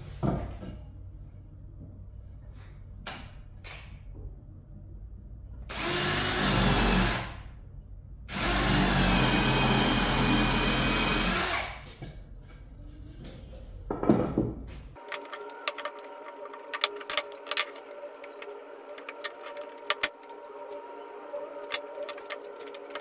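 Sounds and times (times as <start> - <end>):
power tool whining: 5.7 - 7.4, 8.3 - 11.8.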